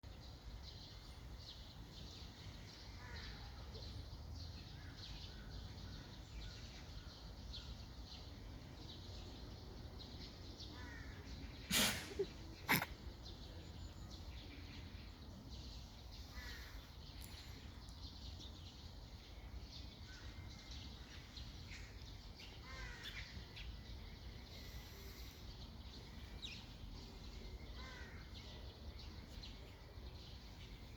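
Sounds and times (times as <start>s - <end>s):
birds chirping: 0.0s - 30.9s
tiger coughing: 11.6s - 13.1s.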